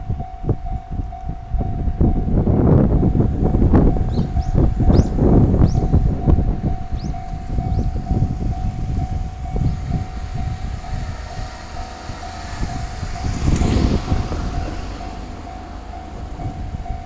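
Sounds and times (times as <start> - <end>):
train rumble and wheel clatter: 0.0 - 17.0.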